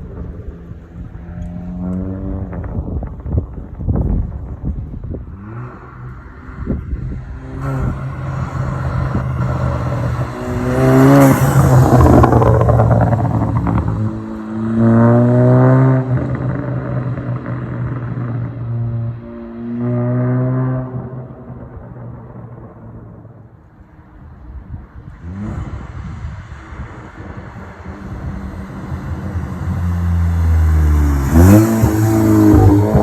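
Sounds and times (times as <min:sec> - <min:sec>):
exhaust pops and crackles: 0:00.0 - 0:05.3
car engine revving: 0:00.0 - 0:23.7, 0:25.1 - 0:33.0.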